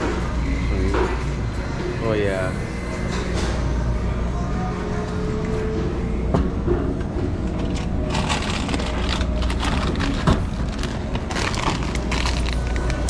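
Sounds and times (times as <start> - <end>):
low hum: 0.0 - 13.0
plastic packaging crinkling: 8.1 - 13.0.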